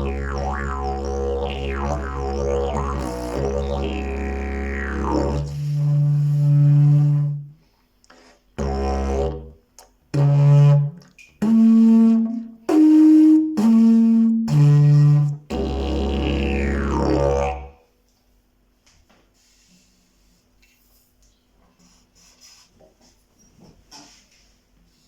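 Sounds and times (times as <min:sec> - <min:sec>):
didgeridoo drone notes: 0:00.0 - 0:07.6, 0:08.6 - 0:17.8.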